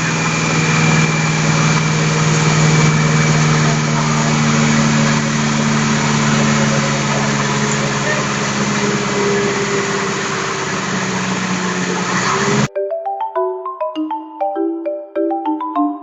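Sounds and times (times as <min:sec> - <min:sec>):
heavy machine engine idling: 0:00.0 - 0:12.7.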